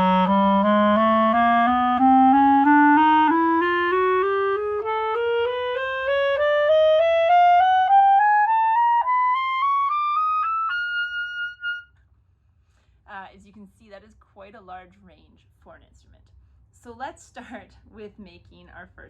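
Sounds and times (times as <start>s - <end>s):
clarinet playing a scale: 0.0s - 11.9s.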